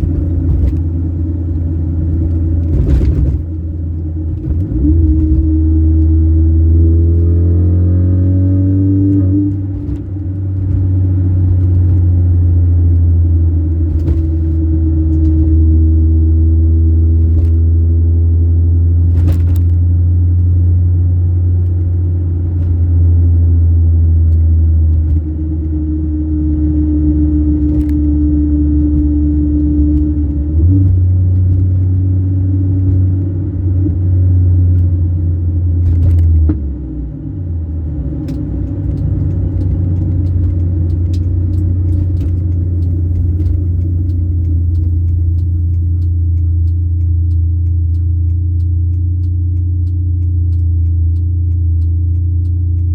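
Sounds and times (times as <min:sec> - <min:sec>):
car engine low drone: 0:00.0 - 0:52.9
faint clicks: 0:37.9 - 0:52.9.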